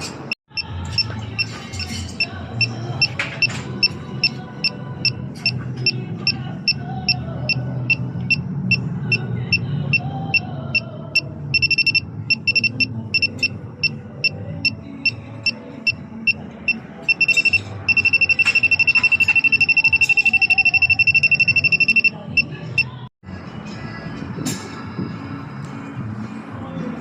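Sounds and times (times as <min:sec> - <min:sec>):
leak detector beeping: 0:00.5 - 0:01.5, 0:03.8 - 0:23.0.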